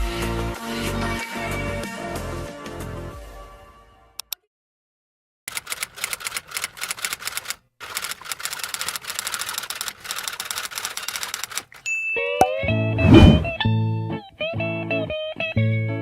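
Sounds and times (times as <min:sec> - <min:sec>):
fast typing on keys: 0:05.5 - 0:11.8.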